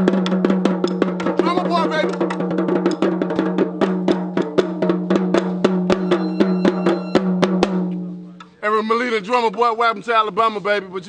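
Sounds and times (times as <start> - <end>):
quick drum hits: 0.0 - 8.0.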